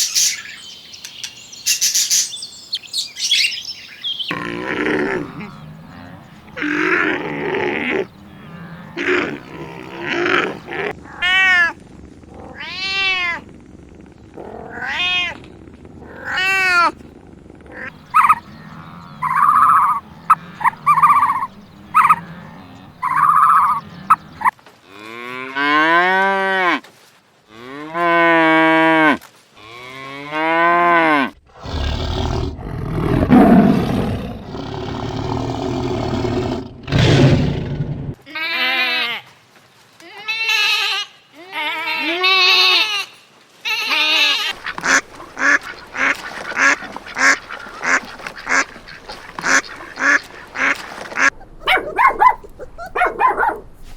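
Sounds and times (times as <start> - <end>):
livestock calling: 3.0 - 24.5, 43.8 - 53.9.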